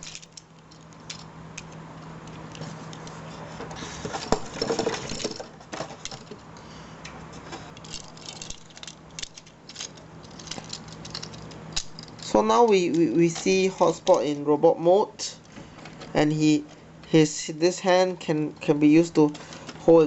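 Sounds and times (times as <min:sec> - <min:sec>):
plastic toy clicking and rattling: 0:00.0 - 0:03.1, 0:07.8 - 0:14.2.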